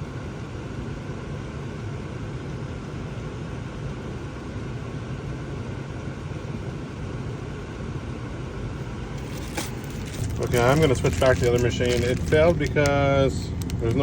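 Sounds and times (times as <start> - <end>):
car engine humming: 8.5 - 14.0.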